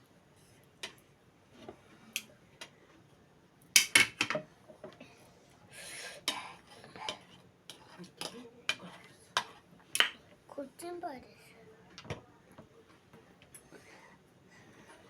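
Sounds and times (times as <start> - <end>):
cutlery clinking on a plate: 6.3 - 10.2.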